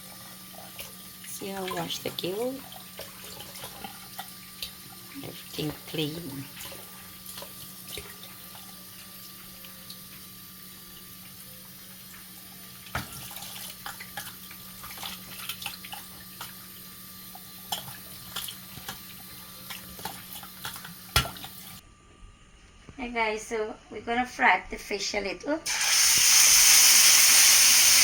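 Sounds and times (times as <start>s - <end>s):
tap running into sink: 12.9s - 14.3s, 19.7s - 21.6s.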